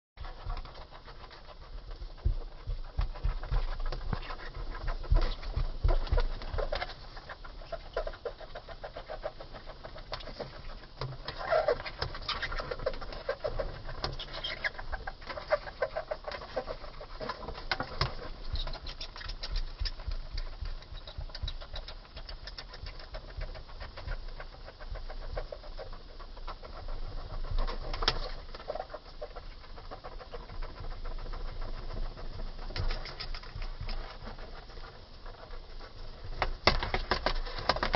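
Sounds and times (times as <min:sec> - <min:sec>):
rustling and clicking: 0:00.2 - 0:37.9.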